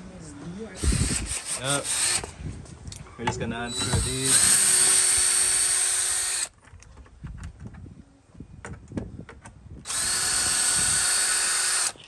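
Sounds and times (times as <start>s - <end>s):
power drill spinning: 0.7s - 2.4s, 3.6s - 6.5s, 9.8s - 12.0s.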